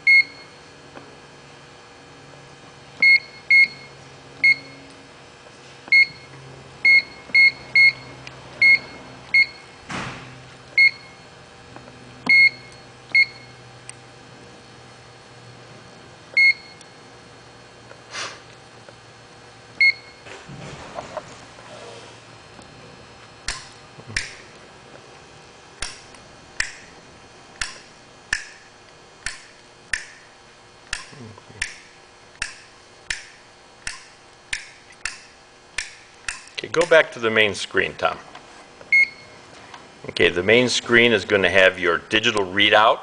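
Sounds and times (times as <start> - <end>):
keypad beeping: 3.0 - 4.8, 5.9 - 9.7, 10.8 - 11.2, 12.3 - 13.5, 16.4 - 16.8, 38.9 - 39.3.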